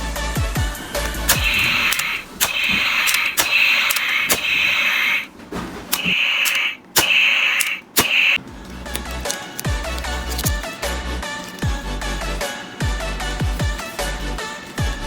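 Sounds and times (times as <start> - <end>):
sharp clicks: 1.0 - 5.3, 5.9 - 10.7
tinny toy rifle bursts: 1.3 - 5.3, 5.9 - 8.4.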